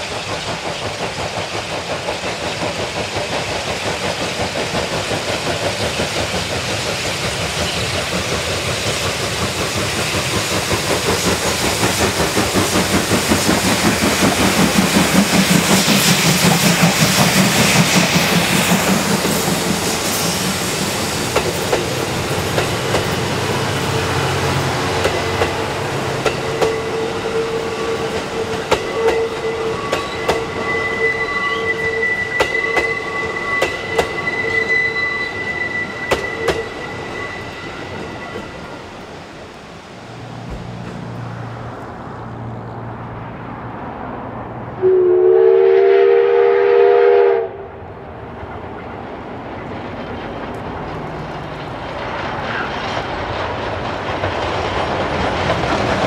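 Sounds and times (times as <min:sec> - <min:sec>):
steam locomotive exhaust chuffs: 0:00.0 - 0:42.6
thin wheel squeal: 0:26.4 - 0:38.8.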